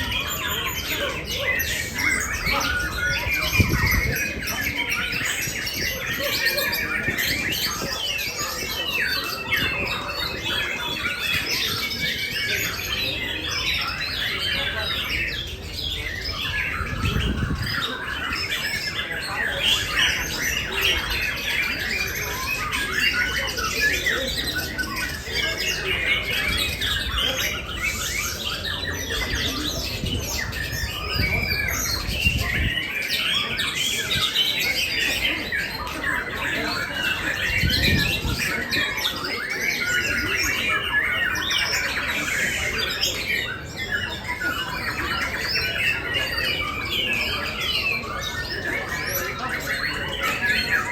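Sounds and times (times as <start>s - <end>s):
songbirds chirping and squawking: 0.0s - 50.9s.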